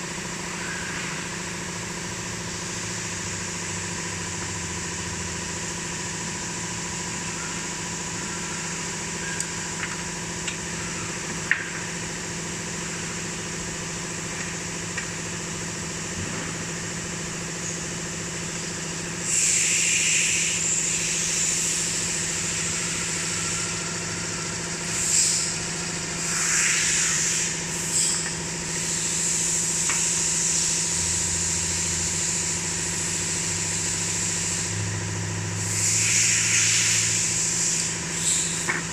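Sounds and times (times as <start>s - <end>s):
machine hum: 0.0s - 38.9s
loud hissing bursts: 19.2s - 22.8s, 35.6s - 38.6s.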